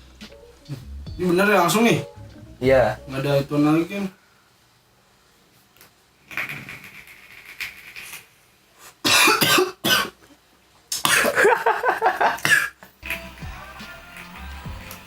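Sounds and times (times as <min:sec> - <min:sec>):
man coughing: 0:09.0 - 0:10.2, 0:11.0 - 0:12.8.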